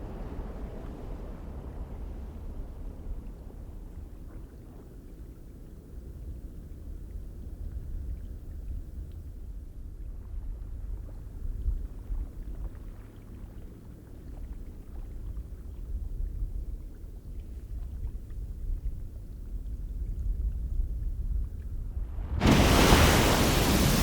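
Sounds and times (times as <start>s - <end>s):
faint splashes: 21.8s - 24.0s
geyser rumbling low: 21.8s - 24.0s.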